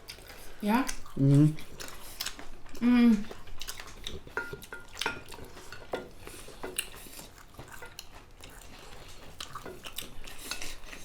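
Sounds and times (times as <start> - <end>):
cutlery clinking on plates: 4.2 - 8.1.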